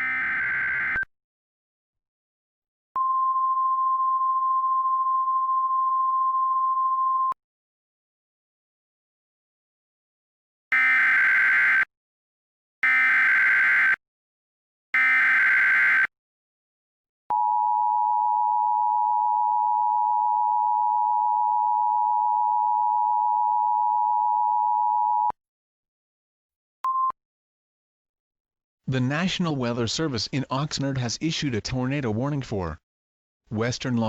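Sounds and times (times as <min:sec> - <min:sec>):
steady warning alarm tone: 0:00.0 - 0:01.0, 0:10.7 - 0:11.9, 0:12.8 - 0:14.0, 0:15.0 - 0:16.1.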